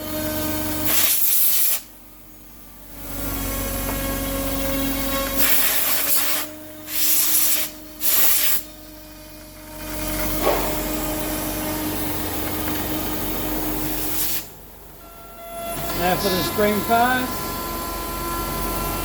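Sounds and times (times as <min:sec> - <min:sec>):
cnc router spindle running: 0:00.0 - 0:00.8, 0:01.8 - 0:19.0
loud hiss: 0:00.8 - 0:01.9, 0:05.4 - 0:08.7, 0:13.9 - 0:14.5.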